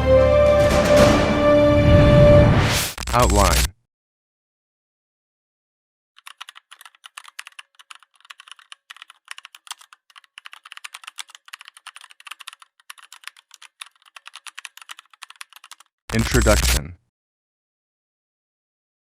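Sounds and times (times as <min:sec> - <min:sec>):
fast keyboard typing: 0:06.2 - 0:16.8.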